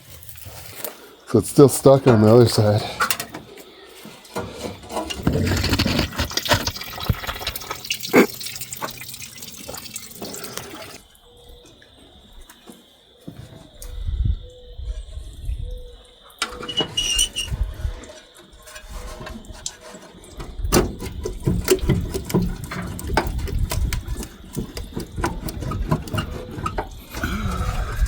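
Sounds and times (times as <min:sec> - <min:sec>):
metal knocks and scraping: 0:04.2 - 0:09.0, 0:16.4 - 0:28.0
high squeal: 0:16.5 - 0:17.7.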